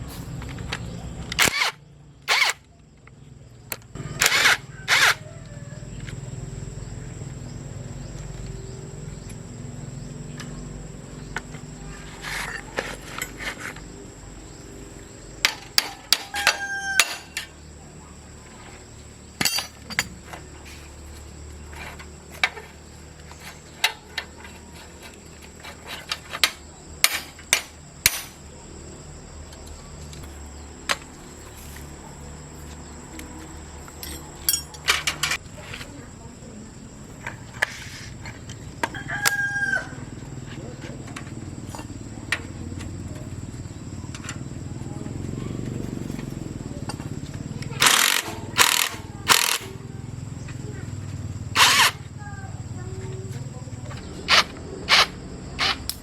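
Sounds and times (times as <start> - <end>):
hand tools knocking on metal: 19.4 - 20.3.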